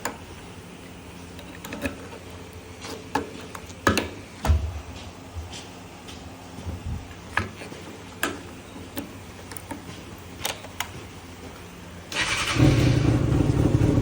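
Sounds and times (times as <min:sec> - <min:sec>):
motorcycle engine idling: 0:12.2 - 0:14.0.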